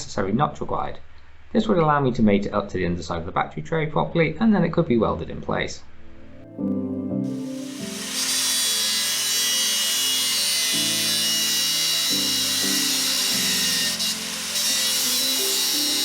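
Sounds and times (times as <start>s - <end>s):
background music: 5.9s - 16.0s
power tool cutting steel: 7.3s - 16.0s.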